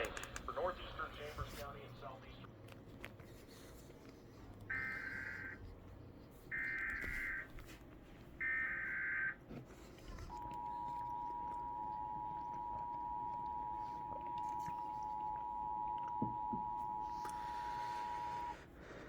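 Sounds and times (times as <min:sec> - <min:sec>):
two-tone attention signal: 0:10.3 - 0:18.6.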